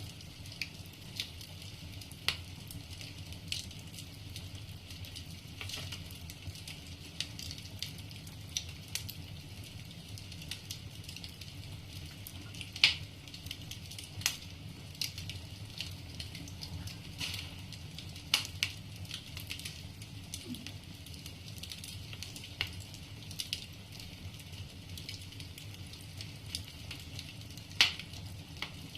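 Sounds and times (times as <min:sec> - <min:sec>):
fire rumbling: 0:00.0 - 0:28.9
logs popping and snapping: 0:27.8 - 0:28.8.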